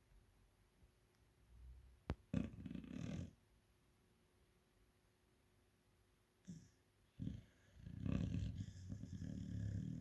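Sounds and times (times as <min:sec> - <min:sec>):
dog snoring: 0:02.3 - 0:03.4, 0:06.4 - 0:10.0.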